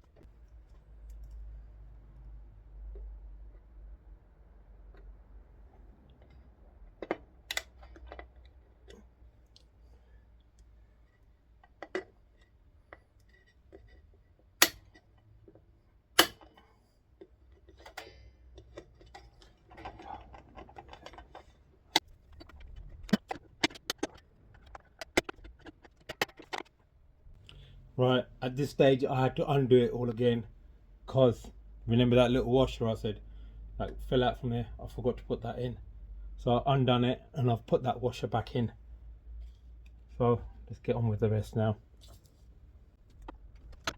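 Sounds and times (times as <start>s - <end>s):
clicks and knocks of hand tools: 14.6s - 15.3s, 16.2s - 26.7s.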